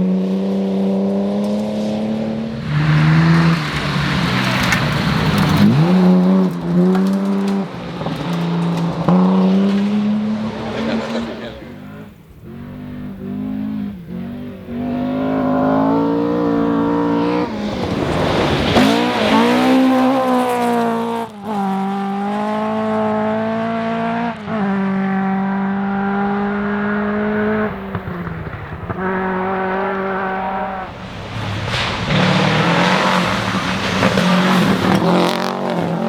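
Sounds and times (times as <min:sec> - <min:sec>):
rally car engine at full throttle: 0:00.0 - 0:36.0.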